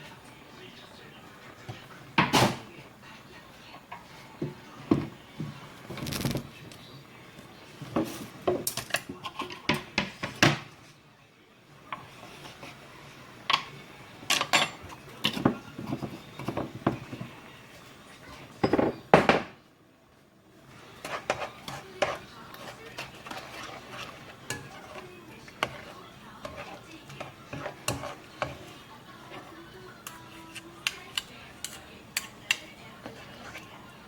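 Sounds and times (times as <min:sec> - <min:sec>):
dishes and utensils clinking: 0:07.8 - 0:10.8, 0:13.4 - 0:17.4, 0:18.3 - 0:19.6, 0:20.8 - 0:34.0.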